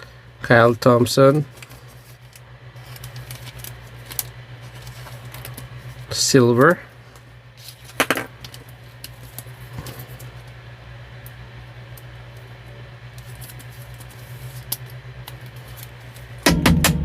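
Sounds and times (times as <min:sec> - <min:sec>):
steady low hum: 0:00.0 - 0:17.0
cards clicking and rustling: 0:01.4 - 0:06.8, 0:13.1 - 0:16.4.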